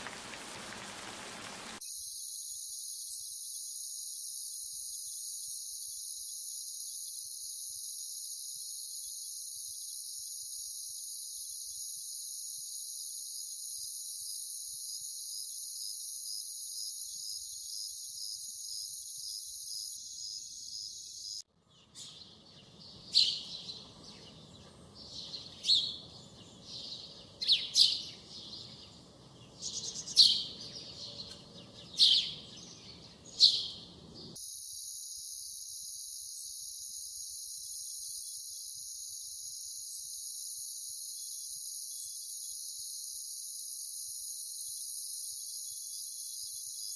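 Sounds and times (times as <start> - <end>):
insects chirring: 1.8 - 21.5, 34.4 - 46.9.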